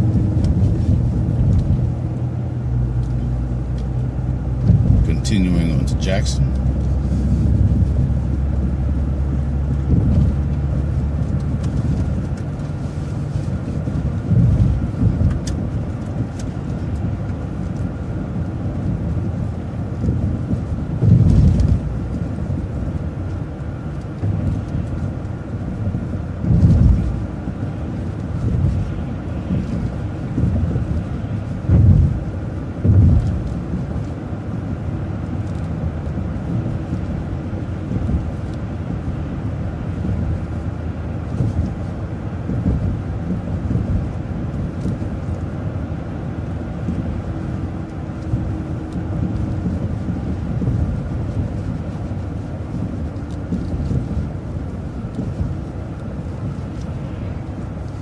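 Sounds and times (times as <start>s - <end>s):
bus engine and road rumble: 0.0s - 58.0s
heavy low thumps: 4.5s - 10.6s.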